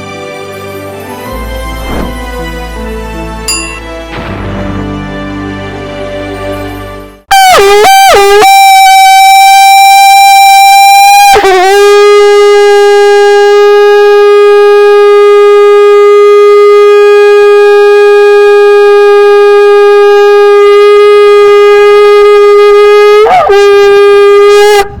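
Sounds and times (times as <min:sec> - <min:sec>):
conch shell blast: 0:07.3 - 0:25.0.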